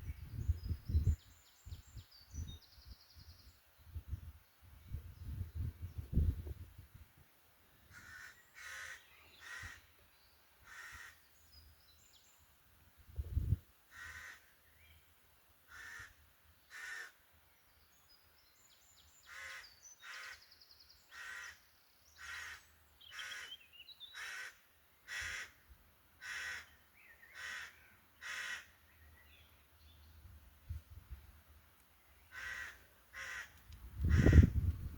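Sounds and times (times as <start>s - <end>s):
crows cawing: 7.9s - 9.9s, 10.6s - 11.2s, 13.9s - 14.5s, 15.7s - 17.2s, 19.3s - 20.4s, 21.1s - 21.6s, 22.2s - 25.6s, 26.2s - 28.8s, 32.3s - 34.6s.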